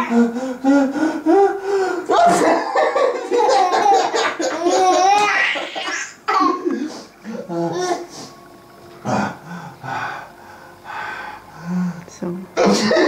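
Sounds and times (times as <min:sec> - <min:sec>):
people laughing hard: 0:01.4 - 0:06.8.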